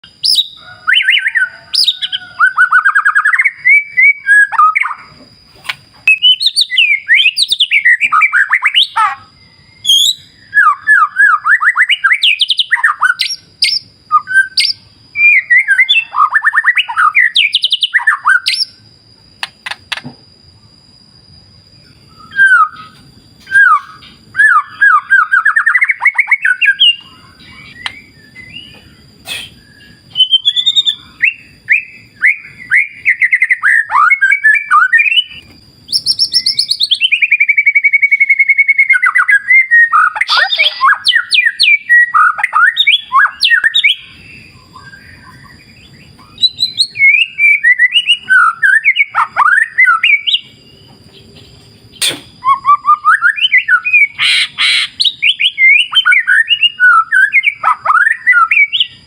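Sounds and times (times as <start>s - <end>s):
bird singing trills and whistles: 0.0s - 20.0s, 20.6s - 59.0s.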